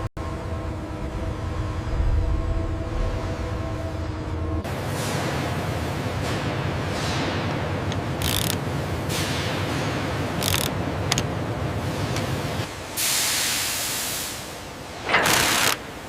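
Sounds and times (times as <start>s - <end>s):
machinery low rumble: 0.0s - 13.2s.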